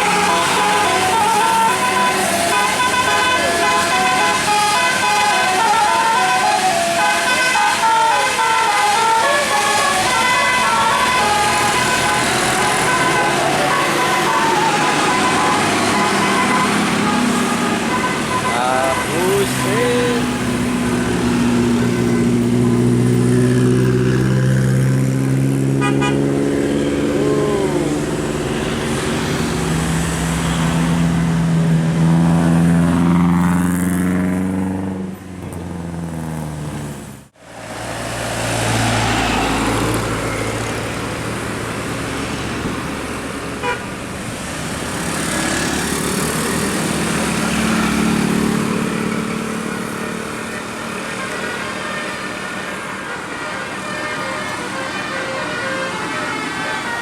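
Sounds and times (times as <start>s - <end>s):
multi-tone air horn tune: 0.0s - 20.6s, 49.8s - 57.0s
traffic noise: 0.0s - 57.0s.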